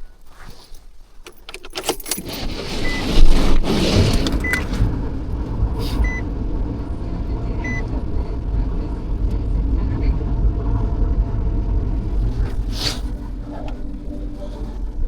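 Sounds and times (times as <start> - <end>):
car engine idling: 4.2 - 15.0
short electronic beep: 6.0 - 6.2, 7.6 - 7.9.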